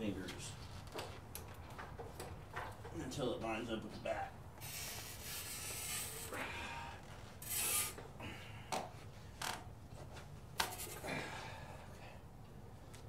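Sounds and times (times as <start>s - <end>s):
gloved hand scraping saw blade: 4.6s - 6.4s, 7.4s - 8.0s.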